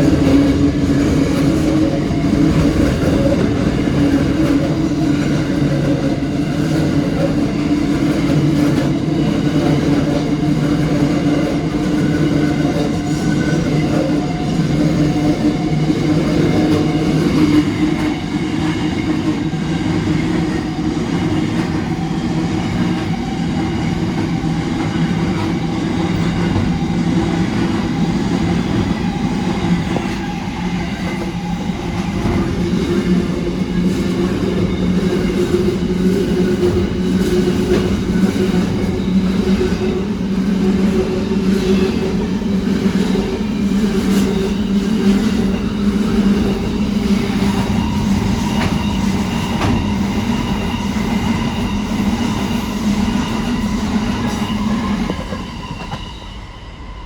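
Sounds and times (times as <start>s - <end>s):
diesel locomotive drone: 0.0s - 57.0s.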